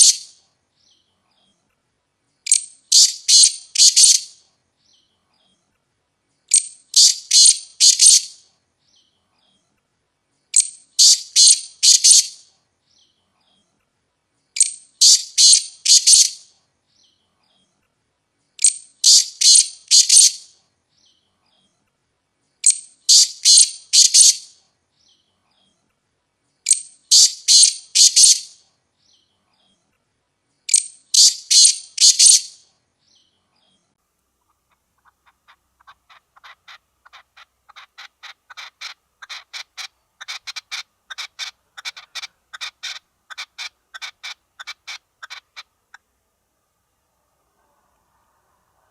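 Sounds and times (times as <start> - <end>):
partridge calling: 0.0 - 0.4, 2.5 - 4.4, 6.5 - 8.4, 10.5 - 12.4, 14.6 - 16.4, 18.6 - 20.5, 22.6 - 24.4, 26.7 - 28.5, 30.7 - 32.6, 34.4 - 46.1.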